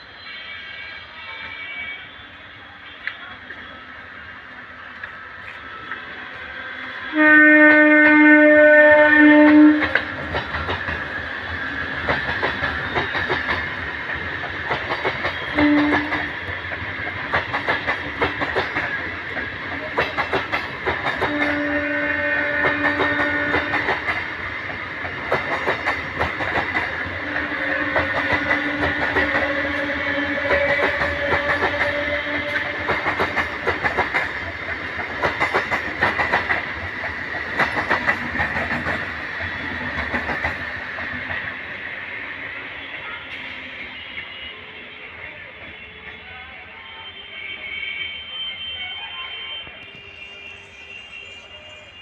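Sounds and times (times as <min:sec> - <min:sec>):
electric train horn: 0:07.0 - 0:10.2, 0:15.3 - 0:16.4, 0:21.2 - 0:24.0, 0:27.2 - 0:33.2, 0:42.8 - 0:52.0
train wheels clattering on rails: 0:09.3 - 0:41.9.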